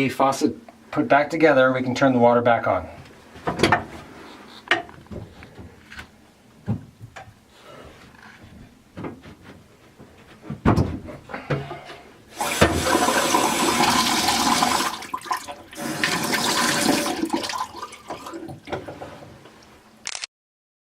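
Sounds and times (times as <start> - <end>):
faucet water rushing into sink: 12.4 - 18.7.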